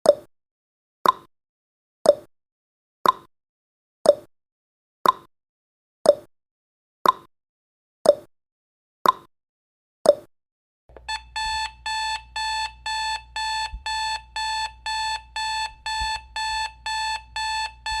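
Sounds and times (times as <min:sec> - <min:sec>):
countdown timer ticks: 0:10.9 - 0:18.0
alarm clock beeping: 0:11.0 - 0:18.0.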